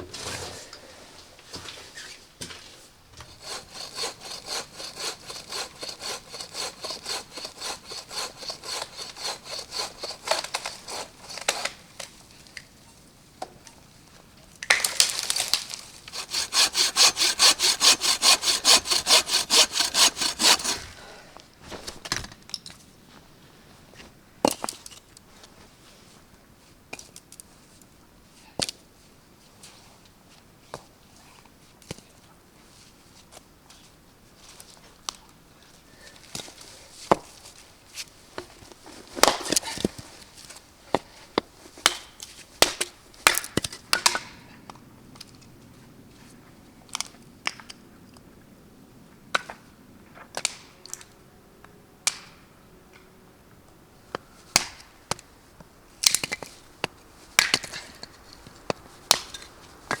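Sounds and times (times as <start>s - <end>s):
sharp knocks cracks and crunching: 14.6s - 16.4s.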